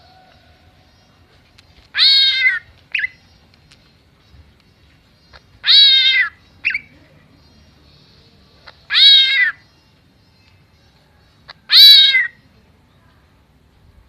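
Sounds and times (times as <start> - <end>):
bird mimicking cat meow: 1.9 - 2.6, 5.6 - 6.4, 8.9 - 9.6, 11.7 - 12.4.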